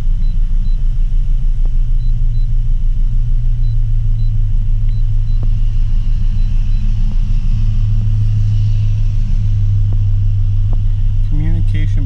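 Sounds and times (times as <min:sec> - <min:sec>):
car engine idling: 0:00.0 - 0:12.0.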